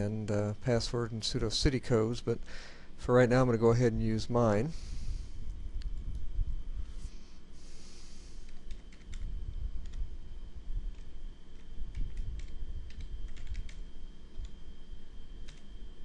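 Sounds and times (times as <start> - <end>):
computer keyboard typing: 8.5 - 10.0, 10.9 - 13.8, 15.4 - 15.7.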